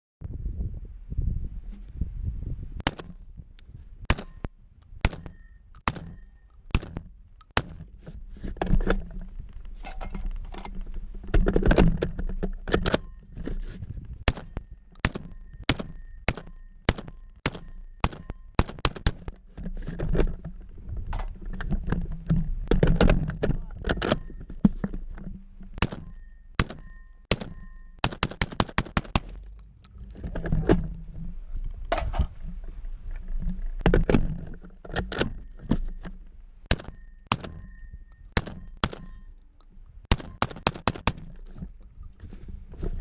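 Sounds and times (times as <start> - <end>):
brief ringing tone: 4.2 - 6.7, 12.7 - 18.6, 23.8 - 24.8, 26.0 - 28.0, 35.2 - 36.1, 36.9 - 40.4.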